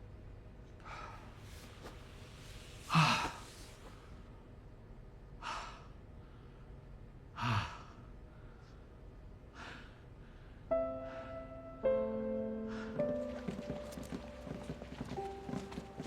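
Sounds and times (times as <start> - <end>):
soft music with held notes: 10.7 - 16.0.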